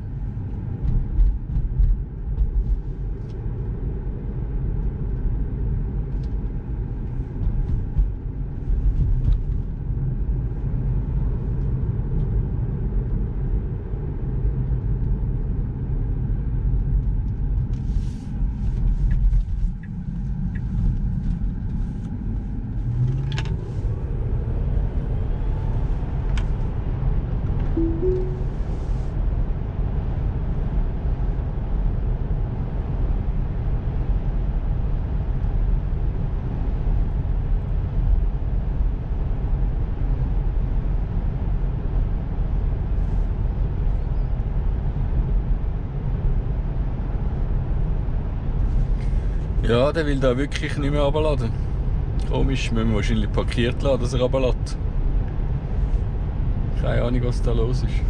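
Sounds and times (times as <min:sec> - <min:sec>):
road and tyre rumble: 0:00.0 - 0:58.0
two-note tone: 0:27.8 - 0:28.8.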